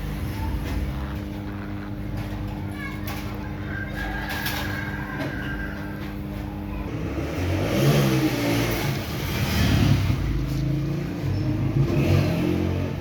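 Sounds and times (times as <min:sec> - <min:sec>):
vehicle engine revving: 0:06.8 - 0:13.0.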